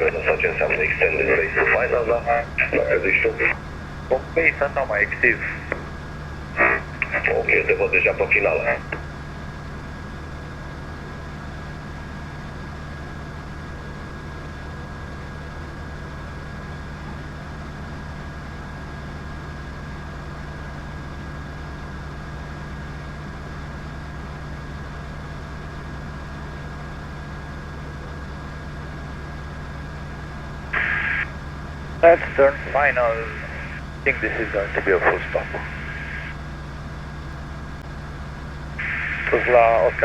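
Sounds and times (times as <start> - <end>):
thin high whine: 0.0 - 9.0, 30.7 - 36.5, 38.8 - 40.0
aircraft engine drone in cockpit: 0.0 - 40.0.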